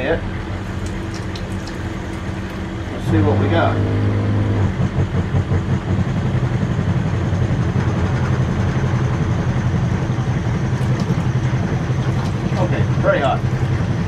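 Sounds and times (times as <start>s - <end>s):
electric water pump humming: 0.0s - 4.8s, 10.0s - 14.0s.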